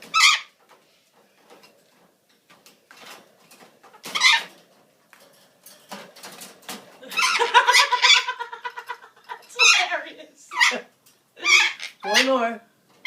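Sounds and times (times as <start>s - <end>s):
bird squawking: 9.6s - 12.4s.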